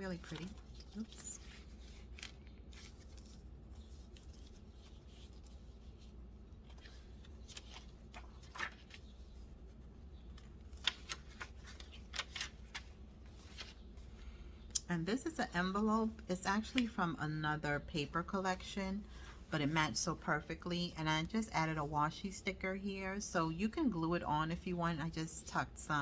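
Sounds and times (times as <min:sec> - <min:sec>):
paper pages rustling: 0:00.0 - 0:14.2.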